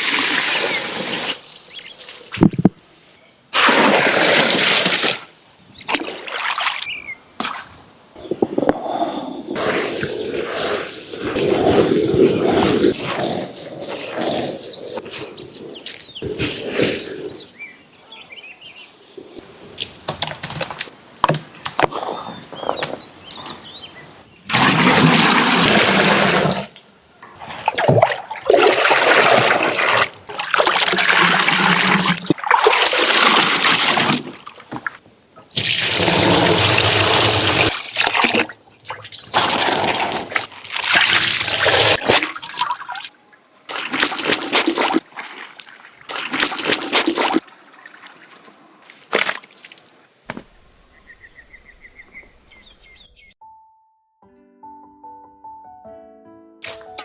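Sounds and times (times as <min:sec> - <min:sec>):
water pouring and splashing: 0:00.0 - 0:02.8, 0:03.6 - 0:05.3, 0:05.9 - 0:07.8, 0:09.6 - 0:15.1, 0:24.5 - 0:26.8, 0:27.4 - 0:43.1, 0:43.7 - 0:49.9.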